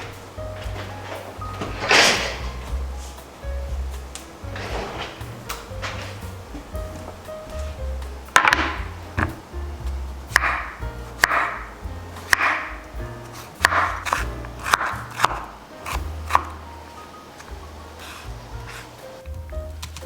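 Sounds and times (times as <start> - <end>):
background music: 0.0 - 20.0
knife chopping on cutting board: 10.3 - 11.7, 12.3 - 12.8, 13.4 - 16.6.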